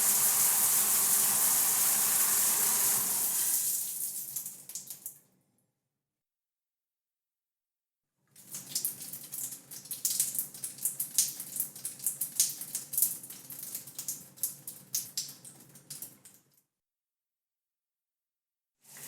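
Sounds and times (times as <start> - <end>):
water drops dripping in a shower: 3.3 - 5.3, 8.3 - 16.7.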